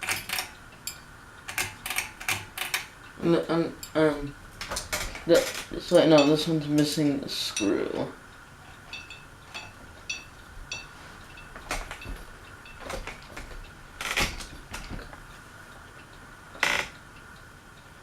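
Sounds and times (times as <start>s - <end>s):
light metallic ticks: 6.0s - 13.8s.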